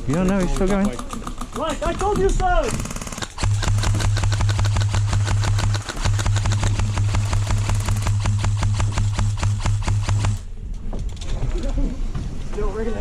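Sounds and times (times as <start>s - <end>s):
airsoft gun full-auto bursts: 0.1s - 10.5s
steady low hum: 2.5s - 13.0s.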